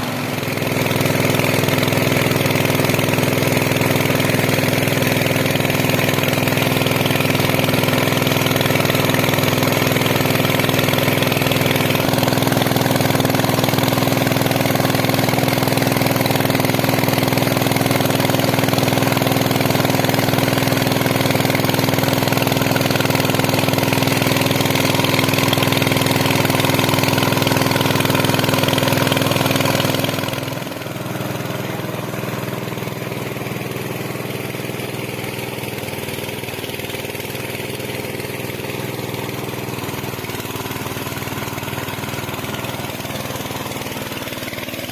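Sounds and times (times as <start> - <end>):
water pump engine running: 0.0 - 44.9.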